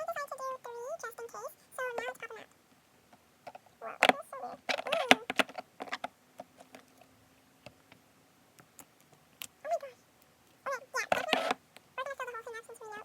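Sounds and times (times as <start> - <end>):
fidget toy clicking: 4.0 - 6.1, 11.0 - 11.6.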